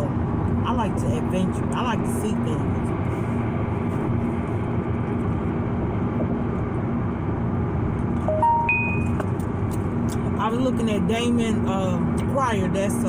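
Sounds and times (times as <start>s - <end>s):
car road and engine noise: 0.0s - 13.0s
rising electronic chime: 8.2s - 9.2s.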